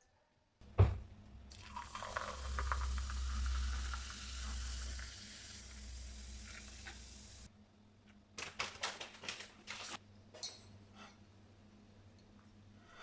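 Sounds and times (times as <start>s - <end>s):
food sizzling in frying pan: 1.7s - 7.5s.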